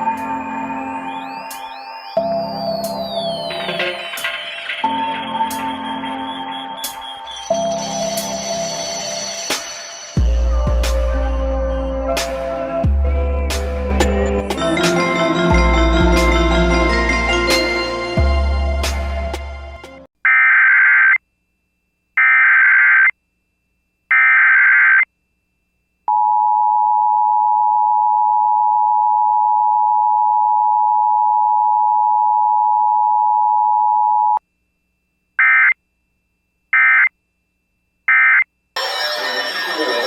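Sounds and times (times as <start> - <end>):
digital data bursts: 0.0 - 10.4, 38.8 - 40.0.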